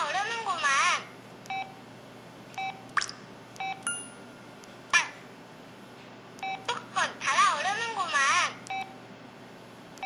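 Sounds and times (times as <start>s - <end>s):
phone key beeps: 1.5s - 1.7s, 2.6s - 2.8s, 6.4s - 6.6s.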